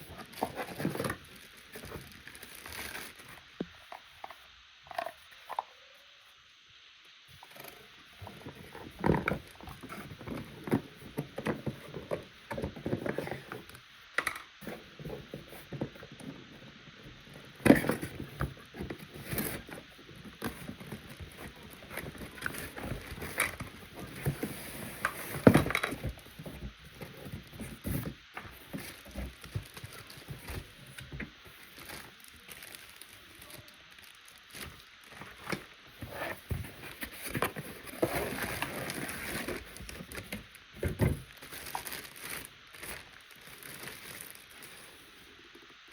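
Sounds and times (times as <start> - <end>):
plastic parts clicking and rattling: 7.5 - 16.4, 17.5 - 44.5.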